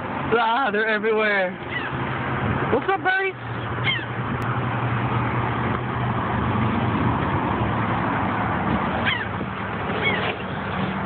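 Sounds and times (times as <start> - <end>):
gulls calling: 1.6 - 2.2, 3.4 - 4.4, 8.9 - 11.0.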